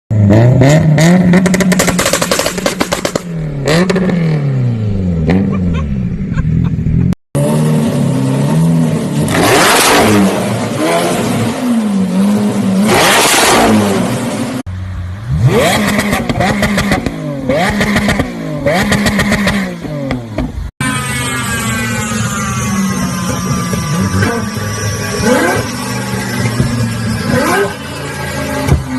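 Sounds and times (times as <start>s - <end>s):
sports car engines revving: 0.1s - 28.9s
exhaust crackles and pops: 1.4s - 3.3s.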